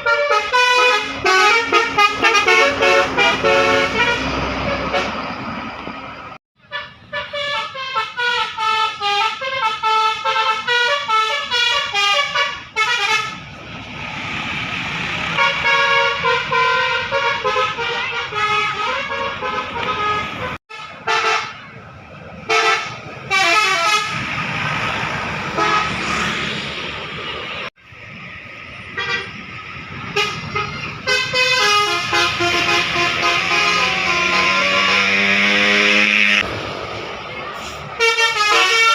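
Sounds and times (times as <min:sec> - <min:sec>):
multi-tone bus air horn jingles: 0:00.0 - 0:05.5, 0:06.6 - 0:13.4, 0:15.4 - 0:21.7, 0:22.5 - 0:24.2, 0:25.6 - 0:26.0, 0:29.0 - 0:29.4, 0:30.1 - 0:36.4, 0:38.0 - 0:38.9
rushing noise: 0:12.6 - 0:38.9.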